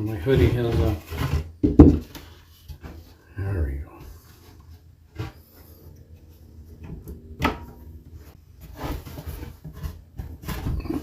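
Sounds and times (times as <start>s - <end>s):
wood rubbing and scraping: 0.0s - 11.0s
wooden knocks: 1.6s - 2.2s.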